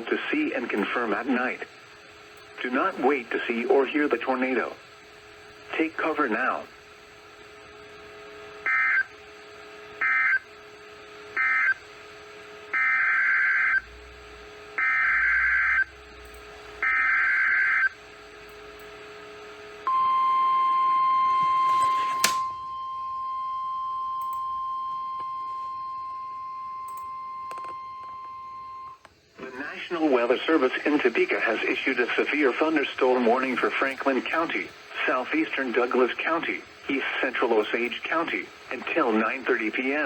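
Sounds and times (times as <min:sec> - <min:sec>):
steady warning alarm tone: 0:08.6 - 0:09.2, 0:10.0 - 0:10.5, 0:11.3 - 0:11.8, 0:12.7 - 0:13.9, 0:14.6 - 0:15.9, 0:16.8 - 0:18.0, 0:19.8 - 0:29.0.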